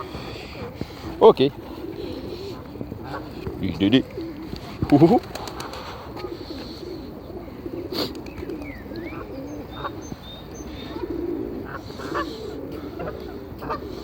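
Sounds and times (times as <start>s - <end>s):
pigeons cooing: 0.0s - 14.0s
small birds chirping: 0.0s - 14.0s.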